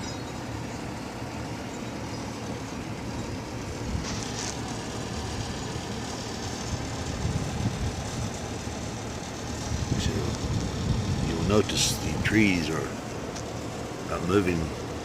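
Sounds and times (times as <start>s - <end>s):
strong wind roaring: 6.7s - 8.4s, 9.4s - 13.0s.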